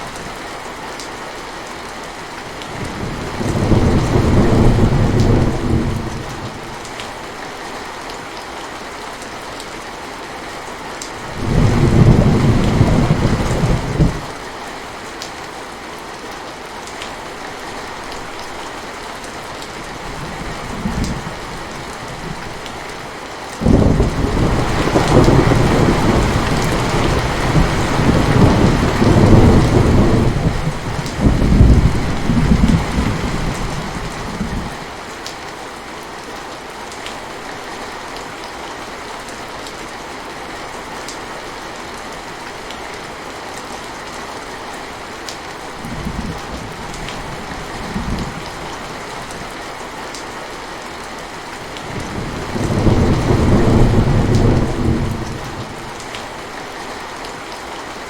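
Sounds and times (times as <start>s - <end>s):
heavy rain: 0.0s - 58.0s
rolling thunder: 2.8s - 6.6s, 23.6s - 34.7s, 52.0s - 55.8s.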